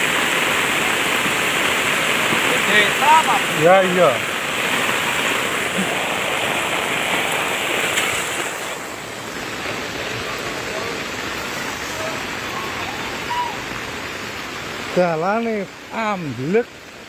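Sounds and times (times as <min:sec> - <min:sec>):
floodwater rushing: 0:00.0 - 0:17.0
faint voices: 0:09.9 - 0:13.7.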